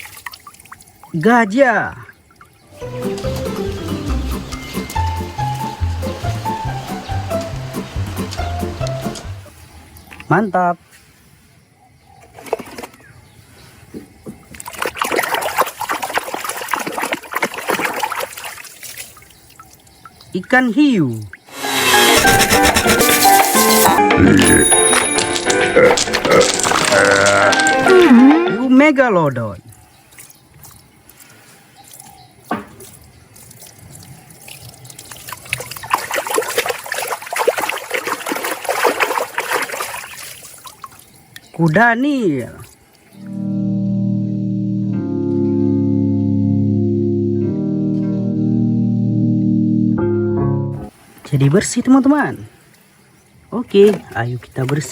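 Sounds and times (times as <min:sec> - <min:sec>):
water splashing and trickling: 0:00.0 - 0:10.5, 0:12.2 - 0:21.6, 0:23.2 - 0:43.3, 0:50.8 - 0:54.9
toy being scrubbed: 0:21.5 - 0:24.0.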